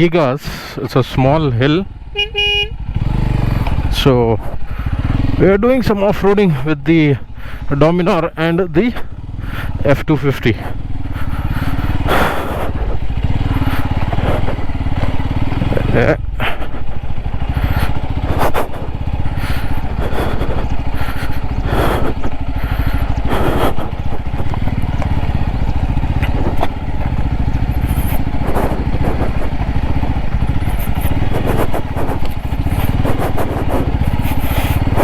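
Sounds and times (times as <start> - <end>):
motorcycle engine running: 0.0 - 35.0.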